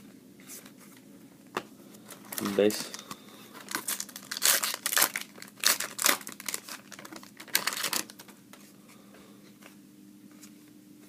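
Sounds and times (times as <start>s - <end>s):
foil wrapper crinkling and tearing: 2.3s - 8.4s.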